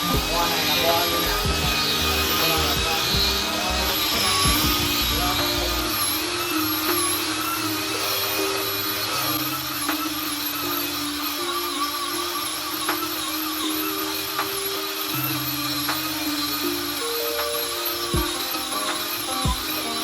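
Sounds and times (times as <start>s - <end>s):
background music: 0.0s - 20.0s
power tool motor whining: 0.0s - 20.0s.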